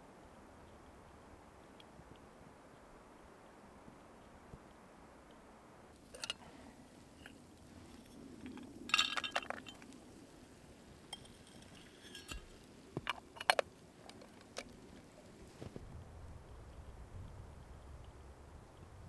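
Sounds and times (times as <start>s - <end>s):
camp cookware clinking: 5.9s - 15.7s.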